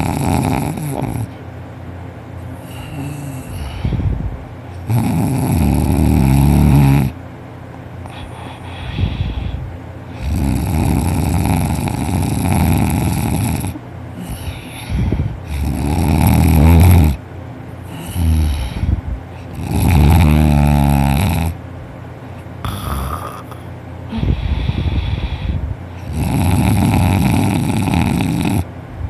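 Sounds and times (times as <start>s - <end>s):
person snoring heavily: 0.0s - 1.4s, 2.6s - 4.1s, 4.8s - 7.2s, 8.0s - 17.2s, 17.8s - 21.6s, 22.6s - 28.7s.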